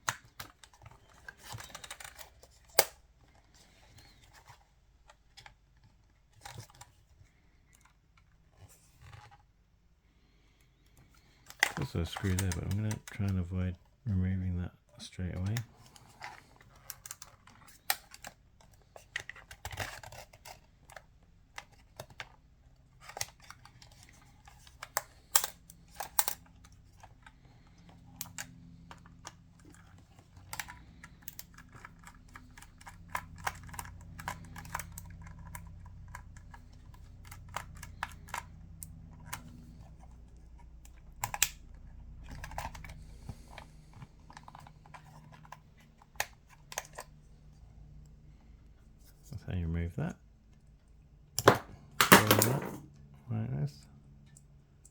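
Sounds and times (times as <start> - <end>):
tools clicking on camera body: 0.0 - 9.4, 11.0 - 13.4, 15.4 - 47.4
faint low hum: 0.0 - 54.9.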